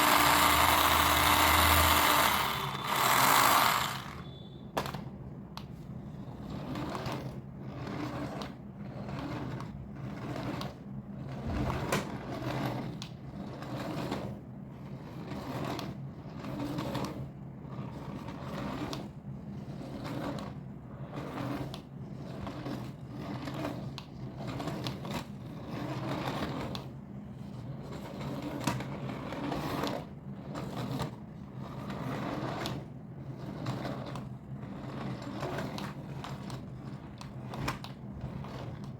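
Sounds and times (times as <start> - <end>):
small electric motor hum: 0.0 - 4.6.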